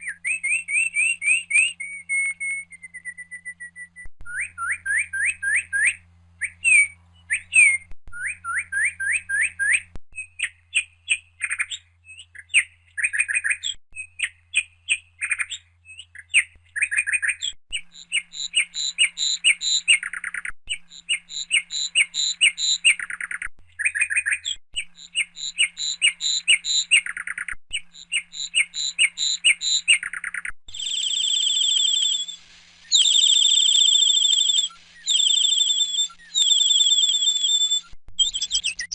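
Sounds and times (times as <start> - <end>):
steady high whistled tone: 0.0 - 10.3, 30.7 - 38.9
bird chirping: 0.0 - 38.9.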